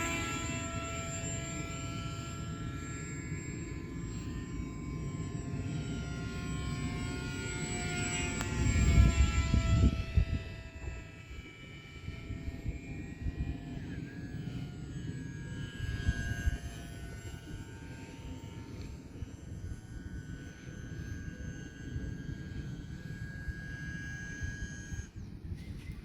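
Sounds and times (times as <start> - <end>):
model airplane motor whining: 0.0 - 26.0
wind buffeting microphone: 8.1 - 15.1, 15.7 - 26.0.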